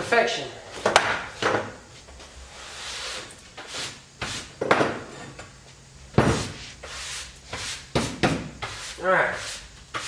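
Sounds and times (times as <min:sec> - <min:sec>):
rubbing and scraping on table: 0:02.5 - 0:04.6, 0:06.2 - 0:10.0
heavy clunk on table: 0:06.2 - 0:06.6.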